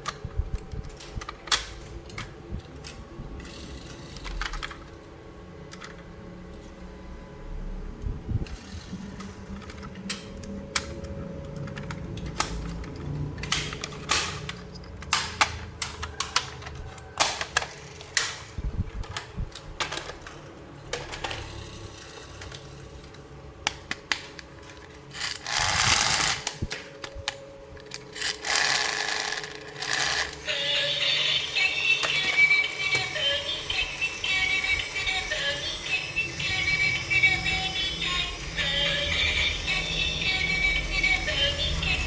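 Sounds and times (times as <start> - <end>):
plastic toy pieces clicking: 11.5 - 18.5, 19.1 - 27.2, 27.9 - 30.6.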